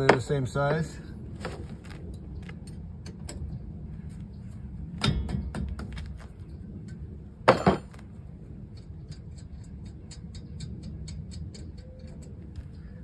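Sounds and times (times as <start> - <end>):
loud metallic clank: 7.5 - 8.0.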